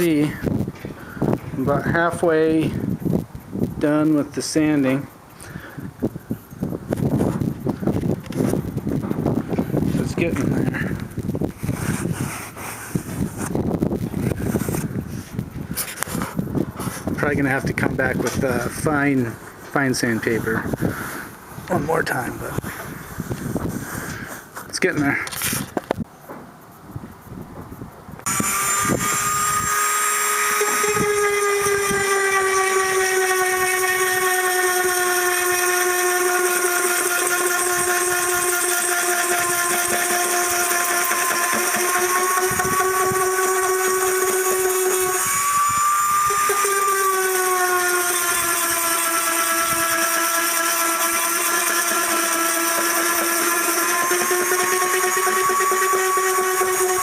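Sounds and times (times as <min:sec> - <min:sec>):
rotary tool sanding hide: 0:06.4 - 0:24.6, 0:28.2 - 0:57.0.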